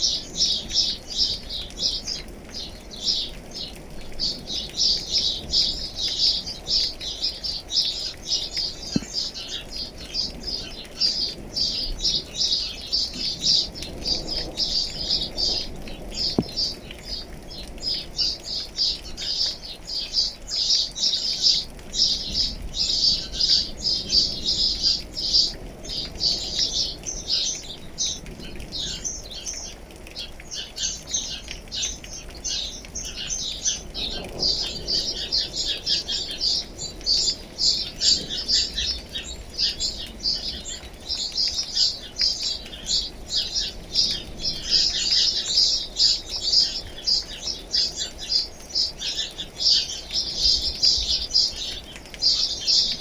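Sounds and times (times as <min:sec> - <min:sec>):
rain hissing: 0:00.0 - 0:53.0
small birds chirping: 0:00.0 - 0:53.0.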